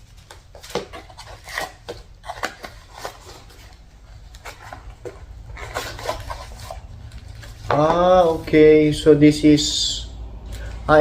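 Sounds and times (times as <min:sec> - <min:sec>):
cardboard and plastic rustling: 0:00.0 - 0:08.6.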